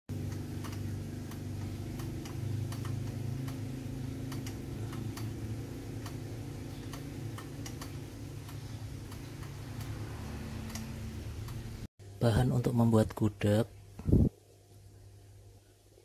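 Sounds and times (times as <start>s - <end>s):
even ticking: 0.1s - 11.9s
low steady hum: 0.1s - 16.0s.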